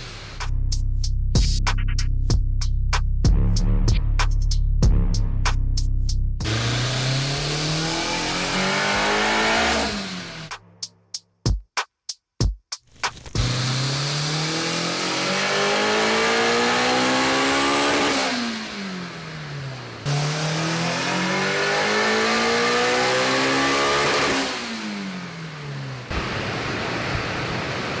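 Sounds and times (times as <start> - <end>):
car engine revving under load: 0.0 - 0.5, 6.4 - 10.6, 13.2 - 26.1.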